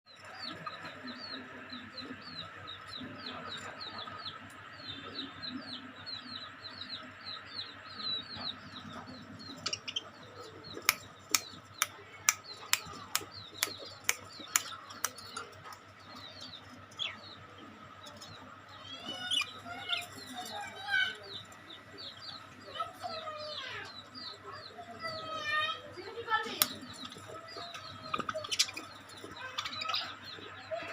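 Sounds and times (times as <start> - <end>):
budgerigars chirping: 0.2 - 30.9
sharp taps: 10.8 - 15.4.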